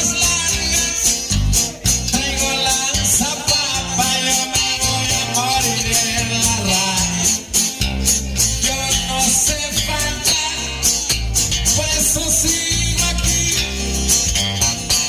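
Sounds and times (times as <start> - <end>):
person singing: 0.0 - 7.5, 8.4 - 14.2
latin band music: 0.0 - 15.0.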